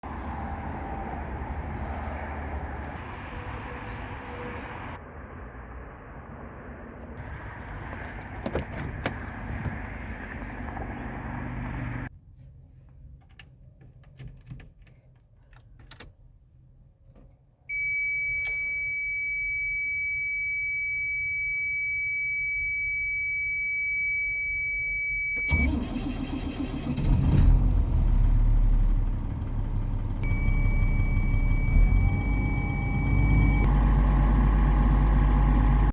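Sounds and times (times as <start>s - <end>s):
truck starter cranking: 25.4s - 27.7s
truck engine running: 27.6s - 35.9s.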